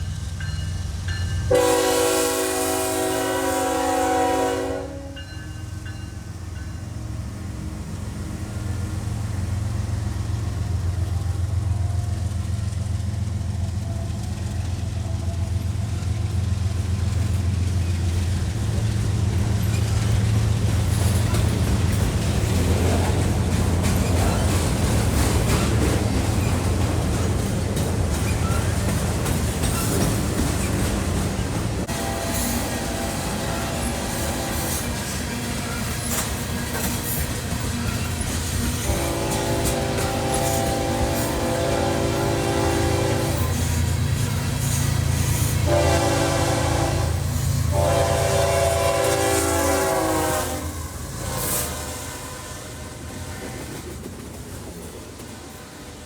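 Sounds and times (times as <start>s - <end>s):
train wheels rumbling on rail: 0.0s - 56.0s
locomotive air horn blasts: 1.5s - 5.5s, 31.9s - 35.0s, 38.8s - 43.8s, 45.6s - 53.7s.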